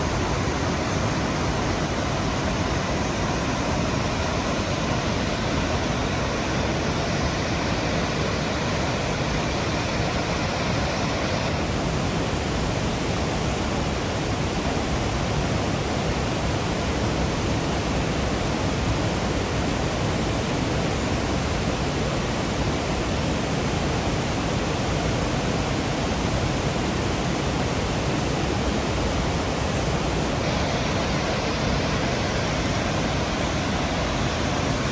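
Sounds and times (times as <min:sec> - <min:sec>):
waterfall rushing: 0:29.7 - 0:34.9.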